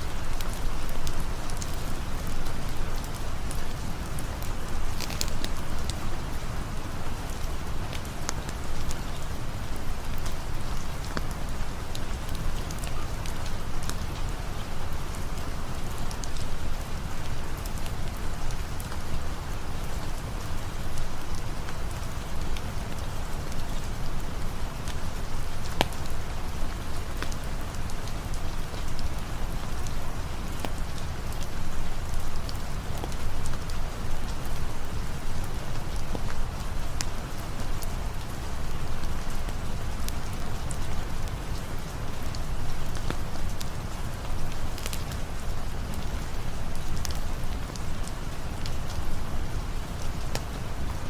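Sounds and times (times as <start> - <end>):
steady rain falling: 0.0 - 51.0
small sharp ticks: 4.9 - 6.0.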